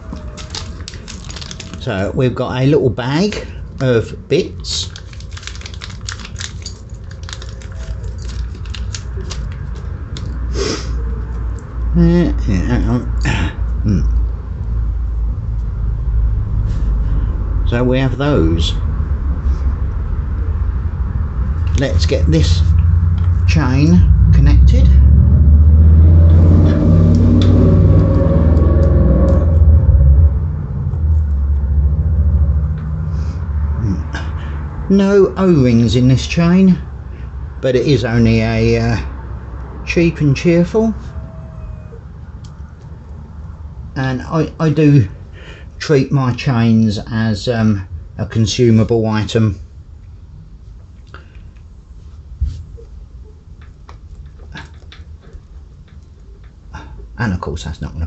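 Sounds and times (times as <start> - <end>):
vehicle engine rumble: 0.0 - 58.0
plastic bag crinkling: 0.1 - 2.0, 4.4 - 10.3.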